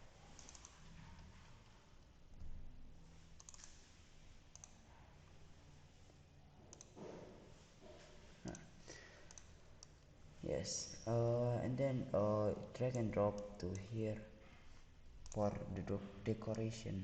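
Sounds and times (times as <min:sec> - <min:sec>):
low room hum: 0:00.0 - 0:17.0
faint computer mouse clicks: 0:00.4 - 0:00.8, 0:03.4 - 0:03.8, 0:04.5 - 0:04.8.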